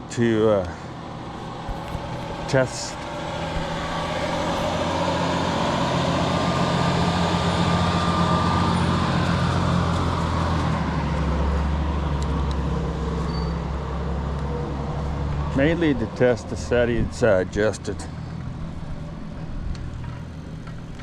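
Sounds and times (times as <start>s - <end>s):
wind and road noise: 0.9s - 21.0s
vehicle engine running: 1.0s - 15.8s.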